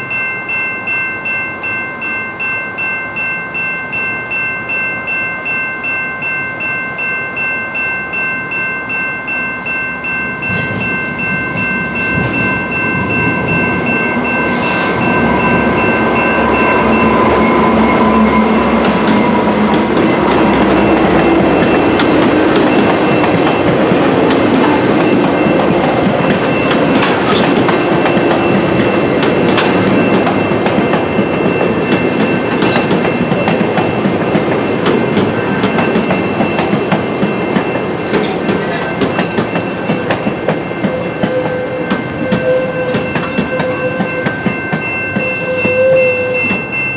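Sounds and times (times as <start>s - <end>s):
train wheels rumbling on rail: 10.4s - 46.8s
high wheel squeals: 14.5s - 23.8s, 24.6s - 32.8s, 37.2s - 46.8s.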